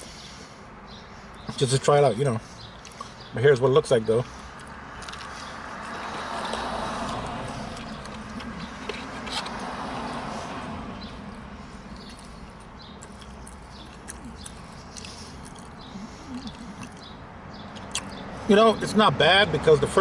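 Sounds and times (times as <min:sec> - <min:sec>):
crunchy chewing: 0:02.7 - 0:03.3, 0:04.3 - 0:18.2.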